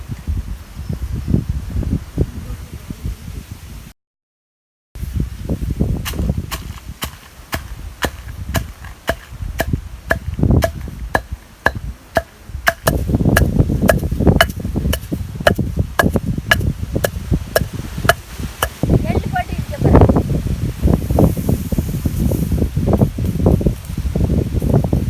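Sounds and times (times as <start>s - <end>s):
pestle pounding in a stone mortar: 6.1s - 18.8s.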